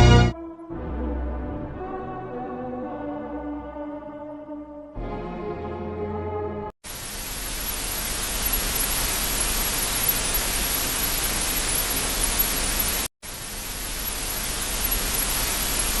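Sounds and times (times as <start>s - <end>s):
static hiss: 6.8s - 16.0s.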